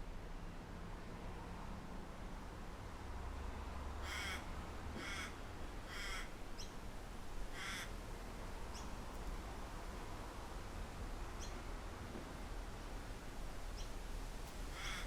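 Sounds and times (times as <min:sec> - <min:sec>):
bird harsh calls: 0:14.8 - 0:15.0.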